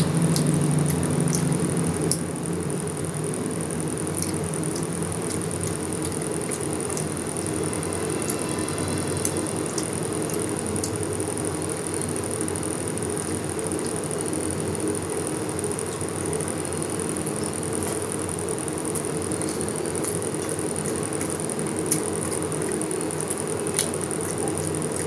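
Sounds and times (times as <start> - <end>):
person chewing with mouth clicks: 0.0 - 2.3, 4.0 - 8.5, 9.2 - 11.0, 18.9 - 25.0
steady low hum: 0.0 - 25.0.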